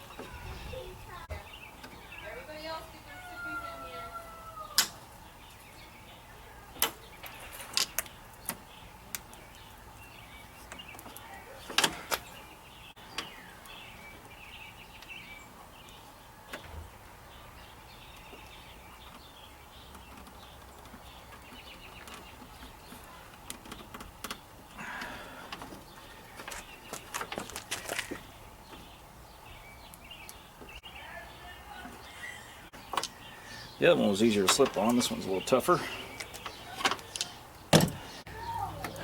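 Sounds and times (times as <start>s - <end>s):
latch parts clicking and knocking: 36.4s - 38.1s.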